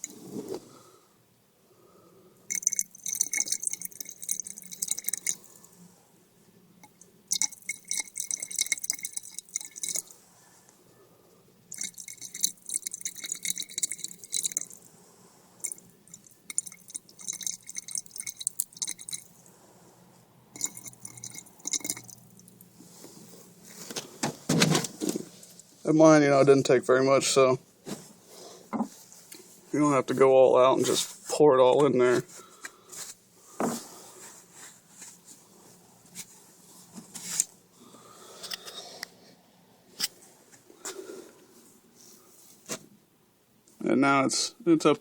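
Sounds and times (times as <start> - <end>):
water trickling into battery: 2.5 - 5.6, 6.8 - 10.2, 11.7 - 14.8, 15.6 - 19.5, 20.5 - 22.7.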